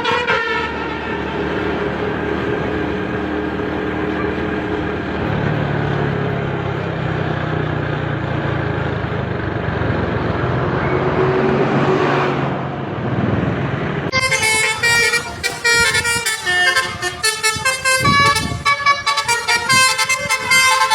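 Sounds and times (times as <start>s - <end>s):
multi-tone musical bus horn: 0.0s - 4.6s, 14.1s - 20.9s
bus driving past: 0.0s - 20.9s.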